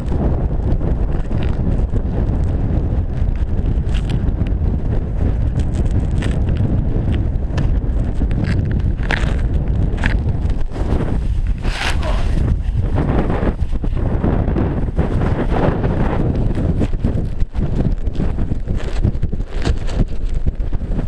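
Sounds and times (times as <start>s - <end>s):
wind buffeting microphone: 0.0s - 21.0s
short crackles: 5.3s - 20.4s.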